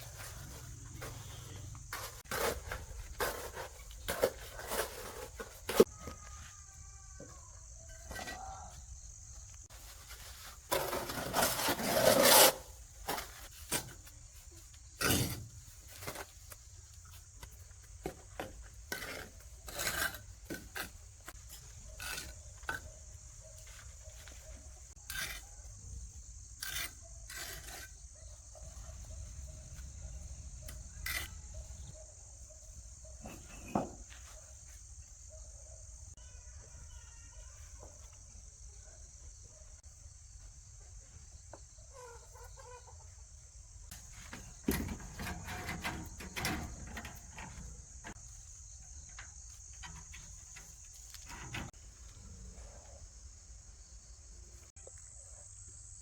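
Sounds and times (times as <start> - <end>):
knocks and scrapes of outdoor work: 0.0 - 56.0
insects chirring: 12.6 - 56.0.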